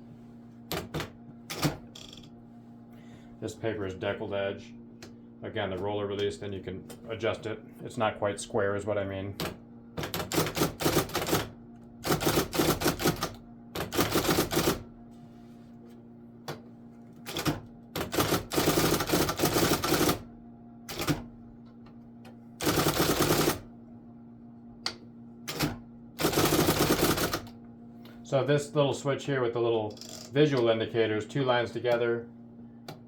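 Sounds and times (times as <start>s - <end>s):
electric typewriter keystrokes: 9.4s - 14.9s, 17.3s - 20.2s, 20.9s - 21.3s, 22.6s - 23.6s, 25.5s - 27.6s
typewriter motor hum: 9.4s - 14.9s, 17.2s - 20.3s, 20.9s - 21.3s, 22.6s - 23.7s, 25.4s - 27.6s, 29.9s - 30.5s.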